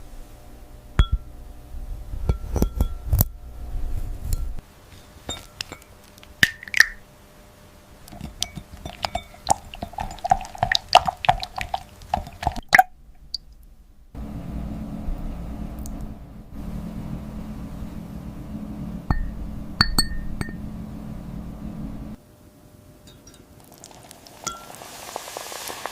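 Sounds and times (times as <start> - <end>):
steady low hum: 0.0 - 24.6
glass clinking: 5.2 - 7.0, 8.1 - 12.9, 19.1 - 20.6, 23.0 - 24.8.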